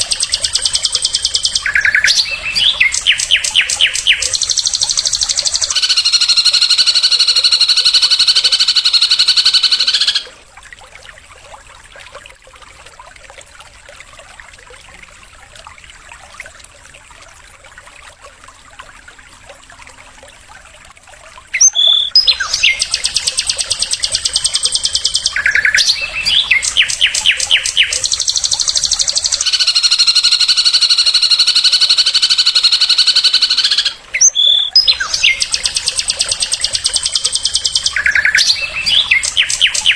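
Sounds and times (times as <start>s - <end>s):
songbird trilling: 0.0s - 10.3s, 21.6s - 39.9s.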